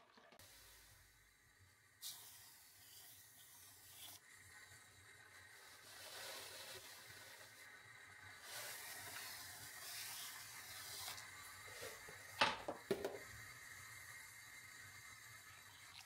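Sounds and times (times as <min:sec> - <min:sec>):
soft rubbing and hissing: 0:00.4 - 0:12.3.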